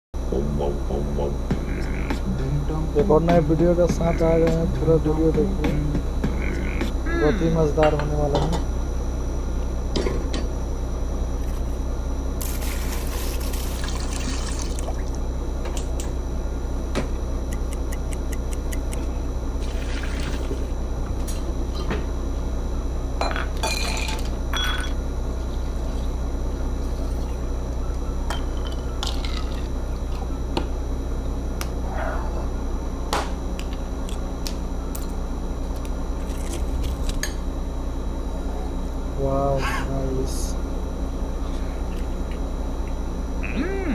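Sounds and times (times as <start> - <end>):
steady low hum: 0.2 - 43.9
liquid pouring and sloshing: 13.7 - 15.1
glass clinking: 23.2 - 25.0.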